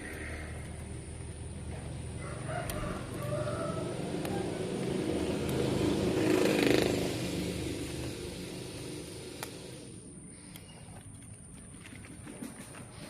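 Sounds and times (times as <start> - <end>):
vehicle passing by: 0.0 - 10.0.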